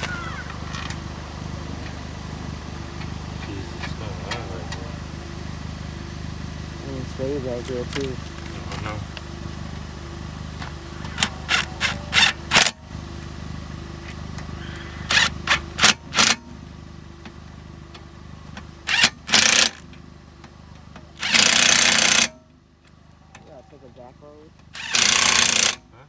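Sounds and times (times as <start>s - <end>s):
impact wrench rattling bursts: 0.0s - 1.0s, 11.0s - 12.8s, 15.1s - 16.4s, 18.8s - 19.9s, 21.2s - 22.4s, 24.7s - 25.9s
vehicle engine idling: 0.0s - 26.0s.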